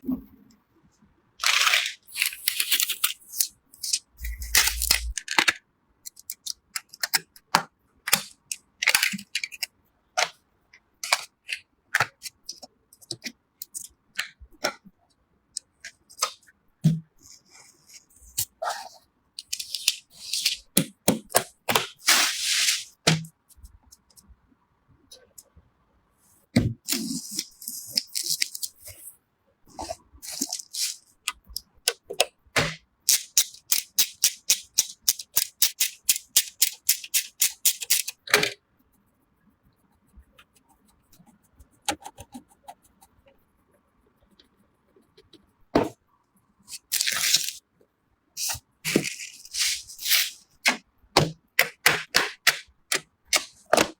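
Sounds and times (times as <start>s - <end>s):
computer parts clicking and snapping: 3.8s - 7.3s.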